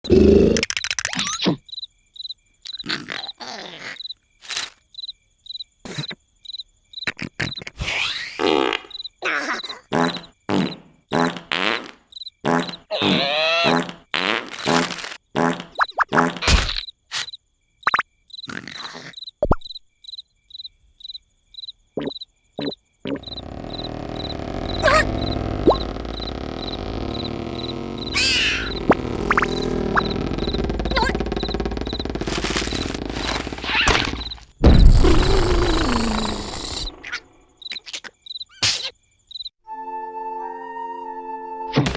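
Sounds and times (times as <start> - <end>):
cartoon snoring: 0.0 - 0.7, 2.8 - 4.0, 12.5 - 14.0, 18.5 - 19.2, 22.6 - 37.2
cricket chirping: 0.1 - 13.8, 14.6 - 39.6
steady rumbling noise: 23.2 - 36.9.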